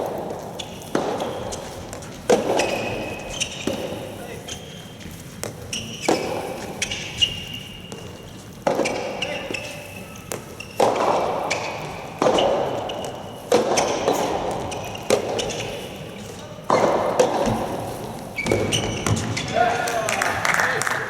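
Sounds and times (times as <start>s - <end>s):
rackets hitting rubber ball: 10.2s - 15.6s.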